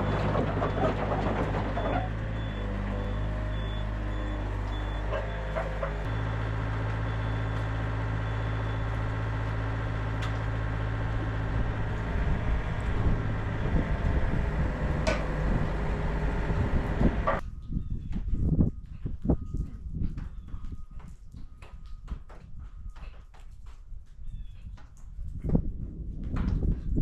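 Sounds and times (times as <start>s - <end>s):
excavator diesel engine running: 0.0s - 17.4s.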